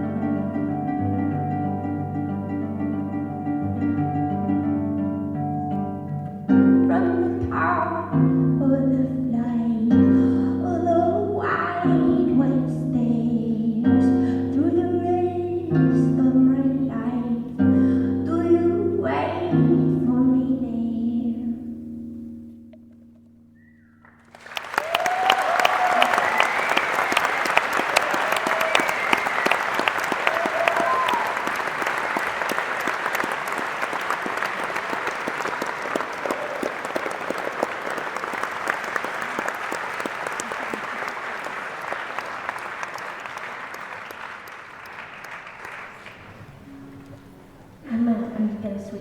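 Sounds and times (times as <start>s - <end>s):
audience applauding: 24.1s - 47.3s
audience cheering: 24.2s - 46.4s.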